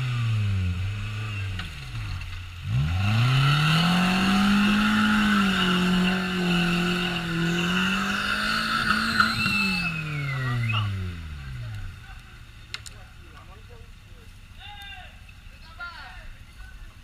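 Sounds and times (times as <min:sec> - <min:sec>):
quad bike engine revving: 0:00.0 - 0:12.0.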